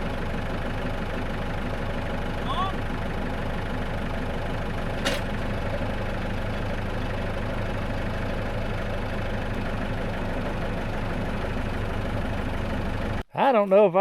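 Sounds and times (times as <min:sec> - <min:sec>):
tractor engine idling: 0:00.0 - 0:13.3.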